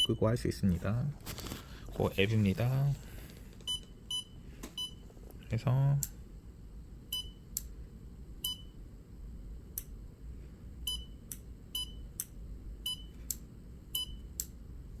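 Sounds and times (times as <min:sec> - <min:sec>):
faint low hum: 0:00.0 - 0:15.0.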